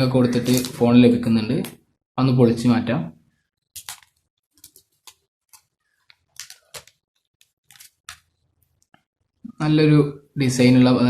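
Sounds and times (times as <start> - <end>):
plastic wrapping crackling: 0.3 - 0.8, 3.8 - 8.1.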